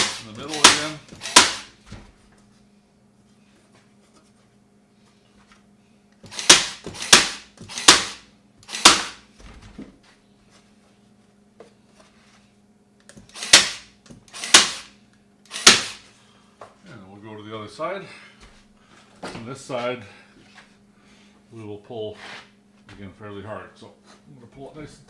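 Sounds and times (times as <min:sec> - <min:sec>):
stapler firing staples: 0:00.0 - 0:01.7, 0:06.3 - 0:09.2, 0:13.3 - 0:14.9, 0:15.5 - 0:16.0.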